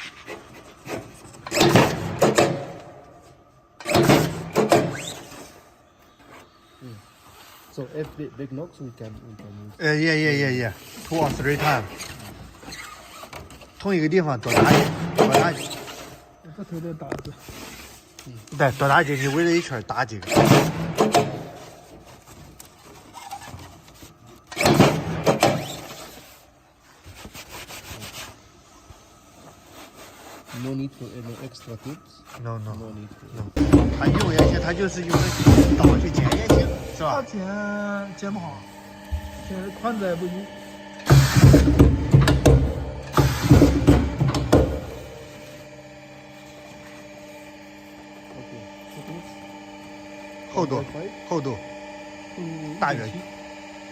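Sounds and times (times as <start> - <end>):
veneer patching machine stroke: 10.0 - 16.2, 16.8 - 53.3.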